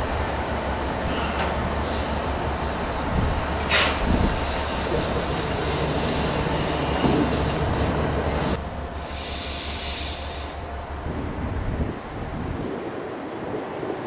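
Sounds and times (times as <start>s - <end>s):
train running on rails: 0.0s - 14.0s
high hiss: 1.7s - 11.0s.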